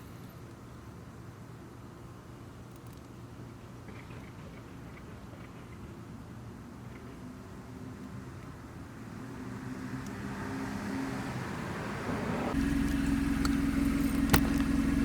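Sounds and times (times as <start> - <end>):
car engine idling: 11.4 - 15.0
faint low rumble: 12.5 - 15.0.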